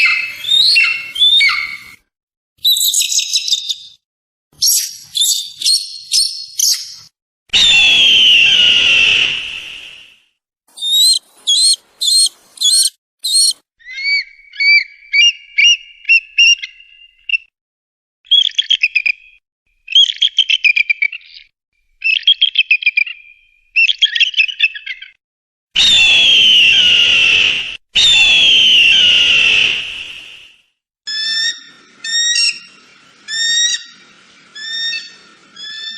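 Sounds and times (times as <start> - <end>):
eagle chirps: 0.0 - 2.0, 2.6 - 4.0, 4.6 - 9.2, 10.7 - 17.2, 34.6 - 35.9
eagle harsh screams: 7.6 - 9.9, 10.8 - 14.8, 25.8 - 30.4
eagle chittering: 10.8 - 14.1.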